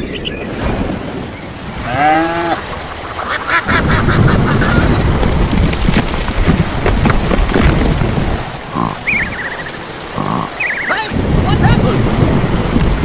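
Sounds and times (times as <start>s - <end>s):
rumbling thunderstorm: 0.0s - 10.5s, 11.1s - 13.0s
sharp hail hits: 5.0s - 8.5s
chattering calls: 8.7s - 11.2s.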